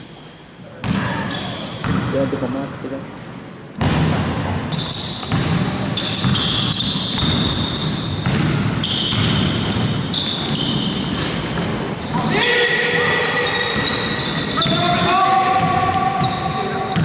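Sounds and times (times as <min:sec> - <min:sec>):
sneakers squeaking: 0:00.0 - 0:02.6, 0:03.8 - 0:17.0
basketball bouncing: 0:01.8 - 0:02.2, 0:05.2 - 0:11.8.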